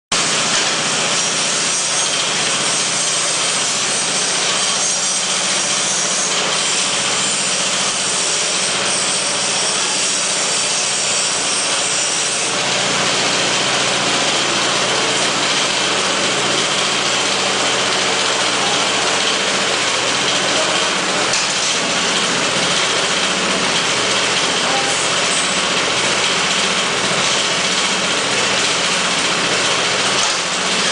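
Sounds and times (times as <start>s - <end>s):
small engine running: 0.2s - 30.9s.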